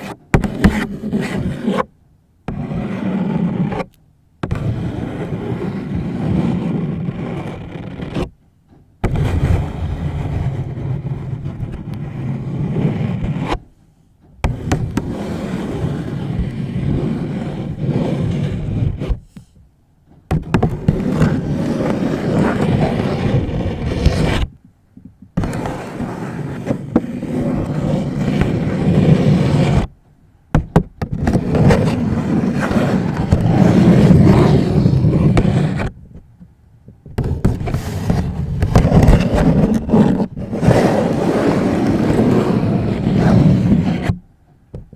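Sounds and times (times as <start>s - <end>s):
nails scratching paper bag: 20.3s - 24.6s, 31.1s - 36.0s, 37.2s - 44.2s.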